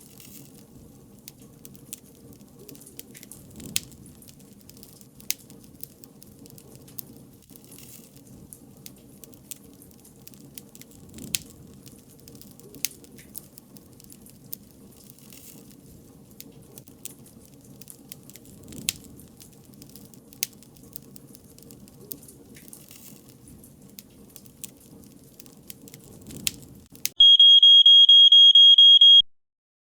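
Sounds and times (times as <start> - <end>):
wood fire crackling and popping: 0.0 - 27.2
high-pitched electronic beeping: 27.2 - 29.2.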